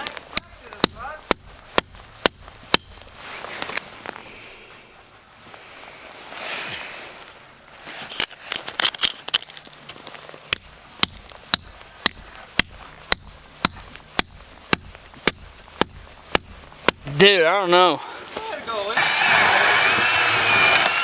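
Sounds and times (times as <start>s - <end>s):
hammer striking stake: 0.3s - 3.2s, 10.5s - 17.2s.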